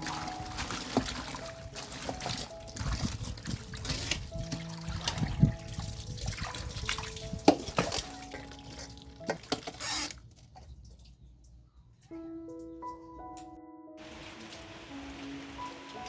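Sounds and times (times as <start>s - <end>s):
water dripping and trickling: 0.0s - 12.0s, 14.0s - 16.0s.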